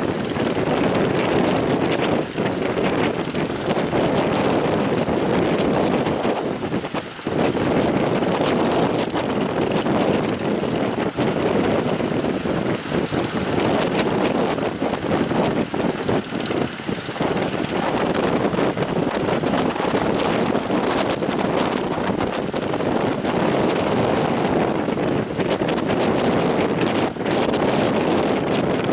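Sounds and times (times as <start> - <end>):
outboard engine running: 0.0 - 28.9
wind buffeting microphone: 0.0 - 28.9.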